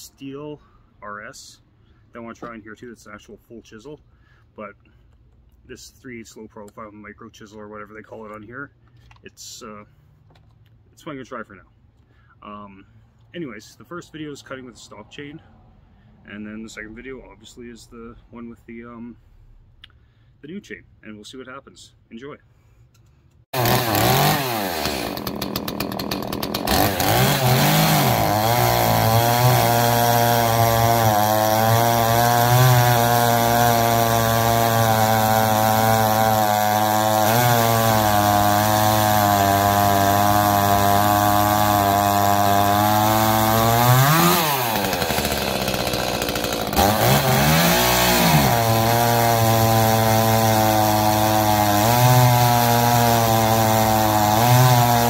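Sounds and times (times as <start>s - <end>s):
chainsaw cutting wood: 23.5s - 55.0s.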